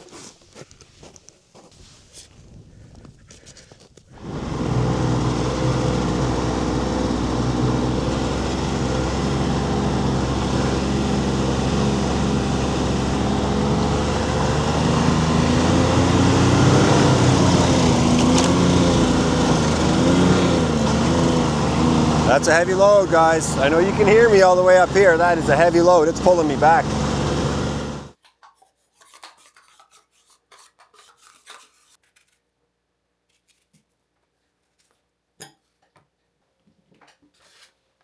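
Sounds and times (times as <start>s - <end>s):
snowmobile engine under load: 4.1s - 28.2s.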